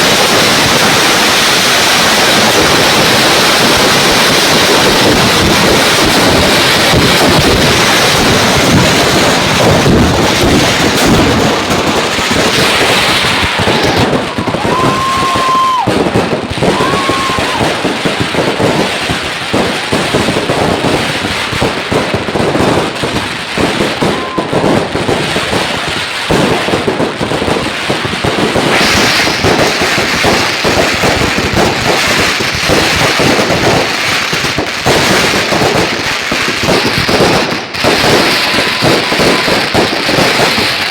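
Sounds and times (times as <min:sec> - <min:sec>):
firework whistles: 0:00.0 - 0:18.8, 0:23.7 - 0:24.9, 0:28.5 - 0:40.9
firecrackers crackling: 0:00.0 - 0:40.9.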